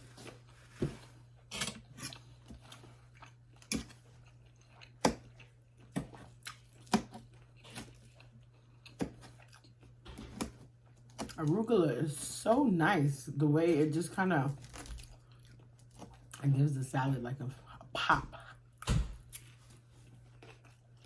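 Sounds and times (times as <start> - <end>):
chewing crunchy food: 0.1 - 11.5, 14.5 - 16.5, 18.4 - 21.0.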